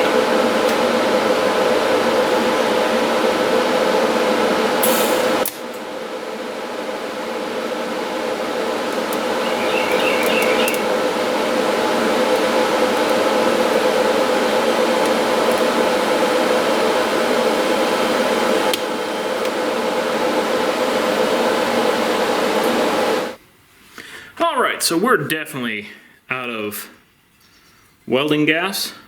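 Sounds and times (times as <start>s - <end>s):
welding arc buzzing hiss: 0.0s - 23.7s.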